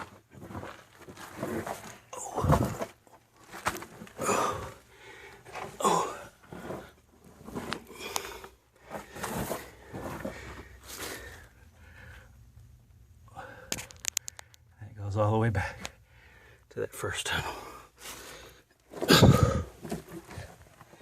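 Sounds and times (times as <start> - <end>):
person breathing heavily: 4.2 - 6.9, 7.9 - 12.4, 15.6 - 16.7, 17.4 - 19.8.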